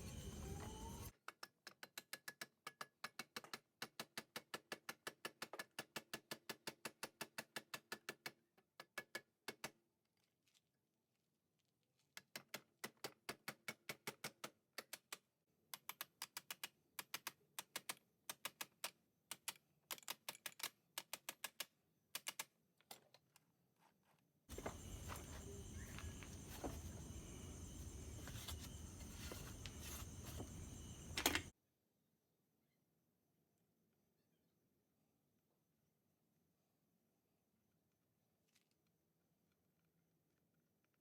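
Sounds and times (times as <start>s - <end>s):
steady hissing: 24.5s - 31.5s.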